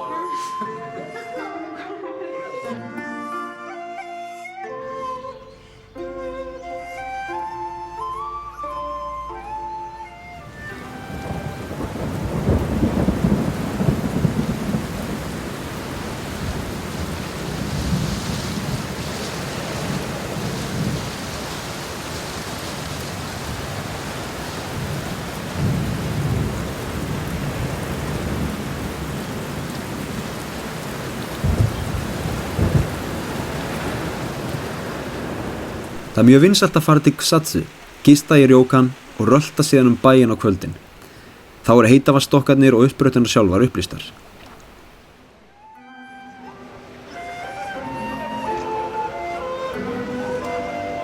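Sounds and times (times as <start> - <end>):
hiss of heavy falling water: 0.3 - 0.8, 10.2 - 45.4
short low thumps: 31.4 - 33.1
deep rumbles: 31.4 - 33.5.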